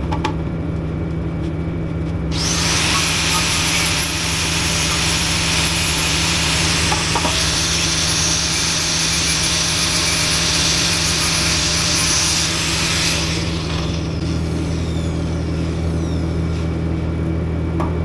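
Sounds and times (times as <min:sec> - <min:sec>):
angle grinder on steel: 0:02.3 - 0:16.7.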